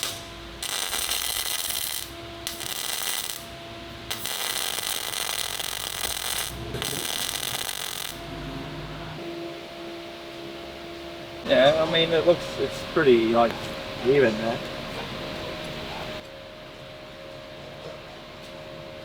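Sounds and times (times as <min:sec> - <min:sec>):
power grinder on steel: 0:00.0 - 0:09.1.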